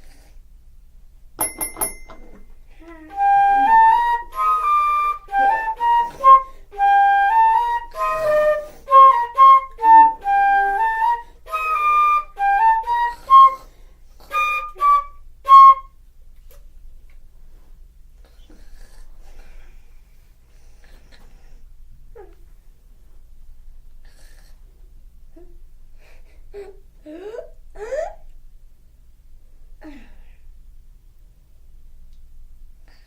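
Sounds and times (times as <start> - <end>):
flute-like wind instrument tune: 3.0 - 16.0.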